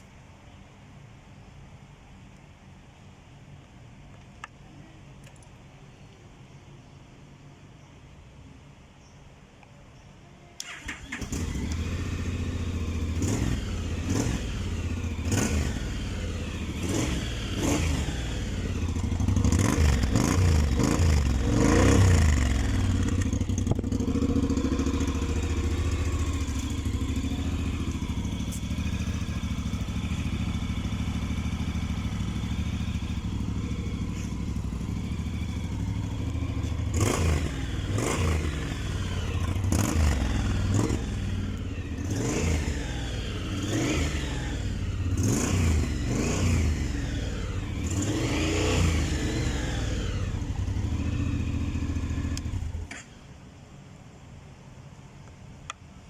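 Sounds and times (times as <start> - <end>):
motorcycle engine revving and idling: 10.6 - 53.4.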